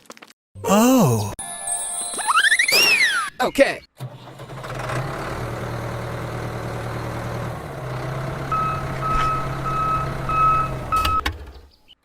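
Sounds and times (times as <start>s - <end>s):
heavy vehicle engine humming: 4.5s - 11.5s
reversing alarm beeping: 8.5s - 11.3s.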